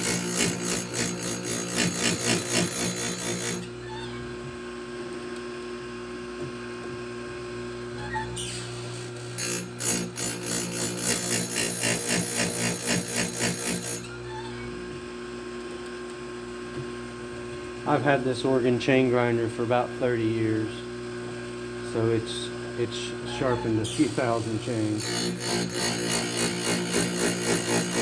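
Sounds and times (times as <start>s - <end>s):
grinding wheel rasping chain: 0.0s - 3.7s, 8.4s - 14.2s, 23.3s - 28.0s
grinder motor humming: 0.0s - 4.6s, 7.4s - 15.0s, 17.1s - 28.0s.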